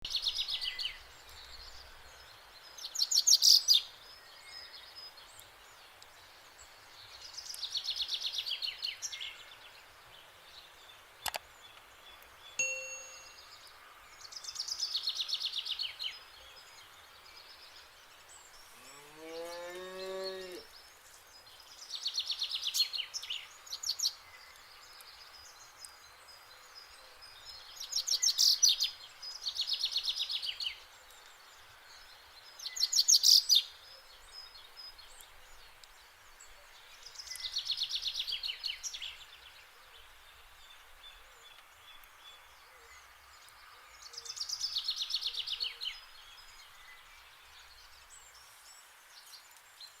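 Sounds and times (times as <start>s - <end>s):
cow mooing: 18.9s - 20.7s.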